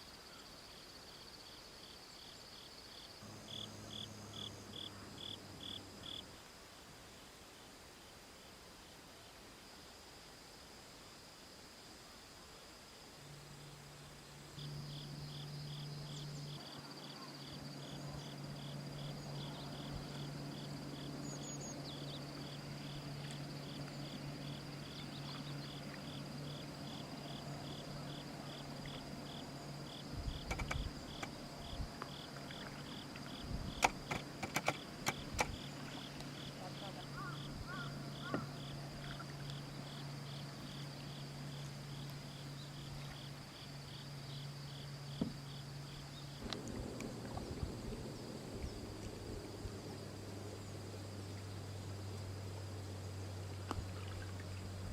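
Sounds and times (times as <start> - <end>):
cricket chirping: 0.0 - 54.9
steady low hum: 3.2 - 7.2, 12.9 - 54.9
sharp clicks: 30.4 - 31.4, 33.7 - 35.6.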